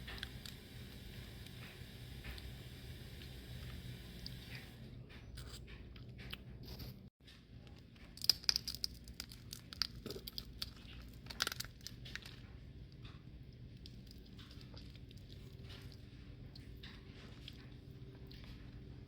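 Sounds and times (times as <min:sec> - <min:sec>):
shells cracking and snapping: 0:08.0 - 0:12.5.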